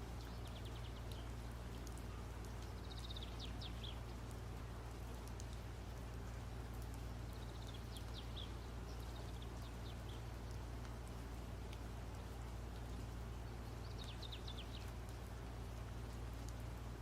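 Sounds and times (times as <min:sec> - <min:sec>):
small bird singing: 0:00.0 - 0:04.4, 0:07.2 - 0:10.7, 0:12.2 - 0:15.1.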